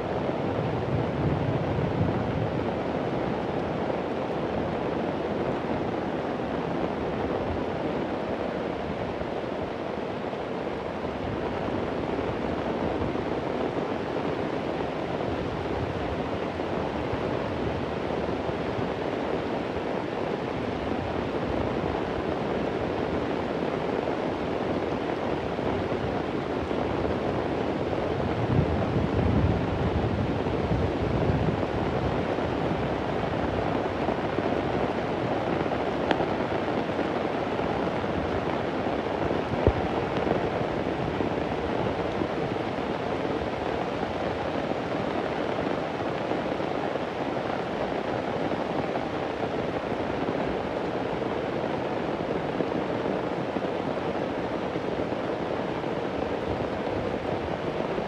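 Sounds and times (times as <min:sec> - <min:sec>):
low rumble of thunder: 0:00.7 - 0:03.0.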